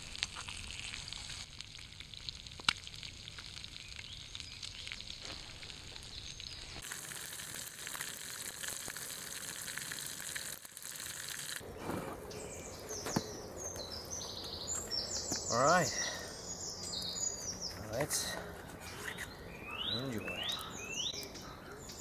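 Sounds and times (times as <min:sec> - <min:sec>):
food sizzling in a pan: 0:05.4 - 0:11.6
birds chirping: 0:11.6 - 0:22.0.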